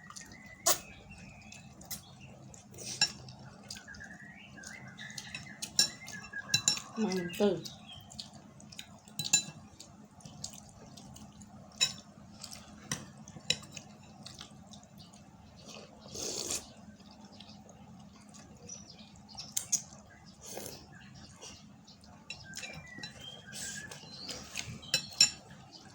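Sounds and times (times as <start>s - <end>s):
cutlery clinking against bowl: 2.8s - 3.3s, 5.0s - 7.0s, 8.8s - 9.7s, 11.7s - 14.4s, 22.3s - 24.0s, 24.6s - 25.6s
wet slurp: 15.8s - 16.8s.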